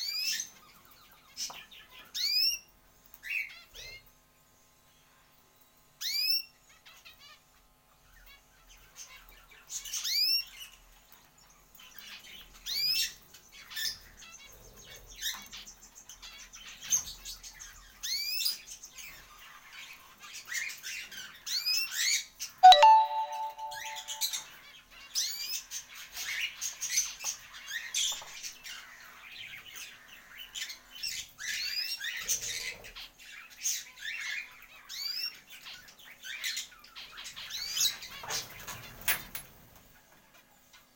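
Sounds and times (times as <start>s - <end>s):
pet birds chirping and squawking: 26.7s - 39.1s.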